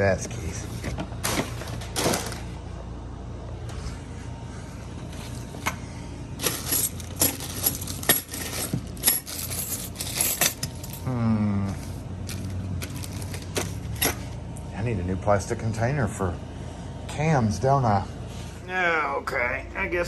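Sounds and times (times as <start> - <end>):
metal keys jangling: 6.4 - 11.1
low hum of voice: 10.9 - 12.5.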